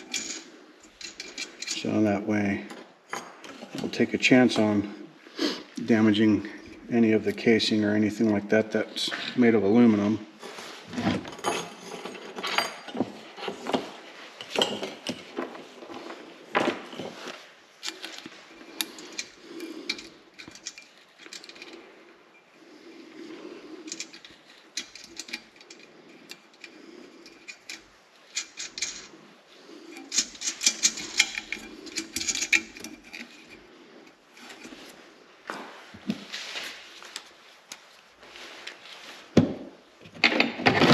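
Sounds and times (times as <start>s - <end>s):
small hardware being handled: 0.0s - 1.9s, 10.5s - 22.5s, 23.2s - 40.8s
metal nuts clinking: 0.0s - 2.1s, 16.8s - 21.8s, 22.4s - 34.9s.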